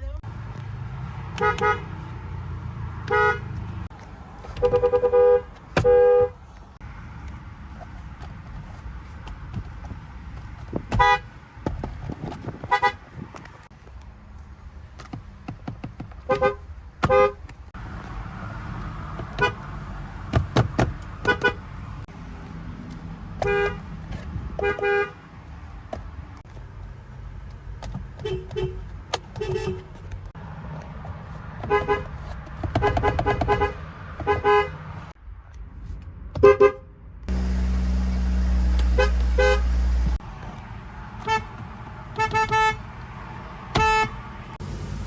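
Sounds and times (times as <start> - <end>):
car horns honking: 1.3 - 2.1, 3.0 - 3.6, 4.5 - 6.4, 10.9 - 11.3, 12.6 - 13.1, 16.2 - 17.5, 19.3 - 19.7, 21.2 - 21.7, 23.4 - 23.9, 24.5 - 25.2, 28.2 - 30.0, 31.6 - 35.0, 36.4 - 40.1, 41.2 - 43.0, 43.7 - 44.3
low engine rumble: 37.2 - 42.2
loud steady rumble: 37.3 - 43.4, 44.2 - 45.0.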